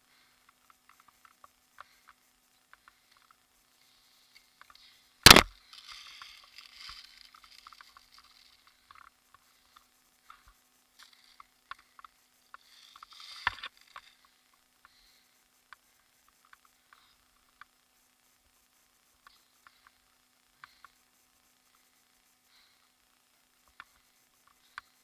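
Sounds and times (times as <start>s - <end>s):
rustling: 2.8s - 14.6s
sharp crack: 5.2s - 5.6s.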